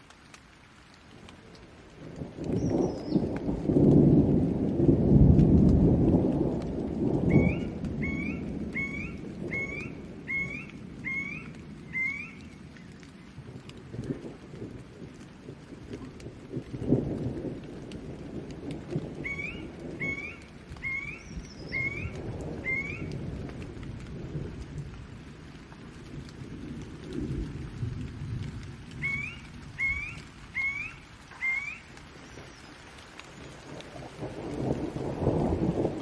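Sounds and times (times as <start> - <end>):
rain falling: 0.0 - 36.0
rolling thunder rumble: 2.0 - 32.6, 33.3 - 36.0
animal chirping rising call: 29.0 - 31.8.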